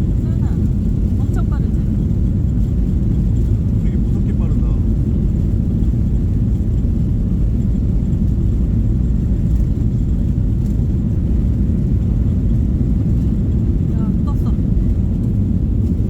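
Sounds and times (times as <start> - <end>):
airplane cabin rumble: 0.0 - 16.0.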